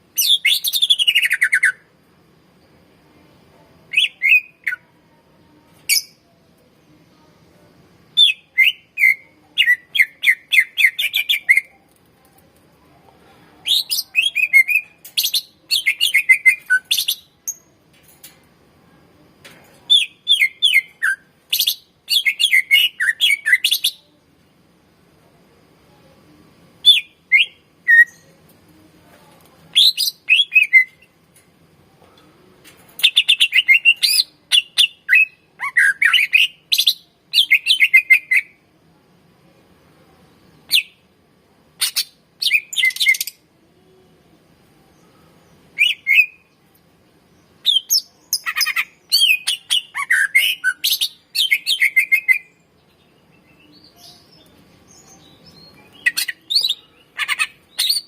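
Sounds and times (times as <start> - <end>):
bird singing chirps and whistles: 0.2 - 1.8, 3.9 - 4.8, 8.2 - 11.7, 13.7 - 17.7, 19.9 - 24.0, 26.8 - 28.3, 29.8 - 31.0, 33.0 - 38.6, 41.8 - 43.4, 45.8 - 46.5, 47.6 - 52.6, 55.0 - 58.0.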